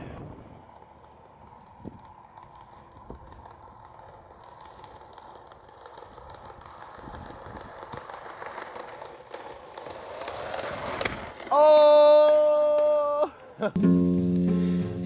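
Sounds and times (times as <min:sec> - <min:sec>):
skateboard wheels rolling on pavement: 0:00.0 - 0:13.2.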